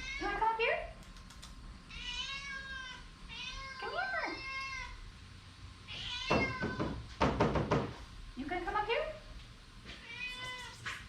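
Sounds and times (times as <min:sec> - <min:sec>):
cat meowing: 0:00.0 - 0:00.4, 0:01.9 - 0:05.0, 0:05.9 - 0:07.1, 0:10.0 - 0:10.8.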